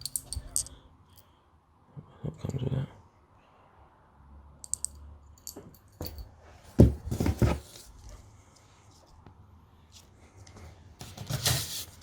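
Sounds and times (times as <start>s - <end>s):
knocks and rustles: 5.5s - 8.0s.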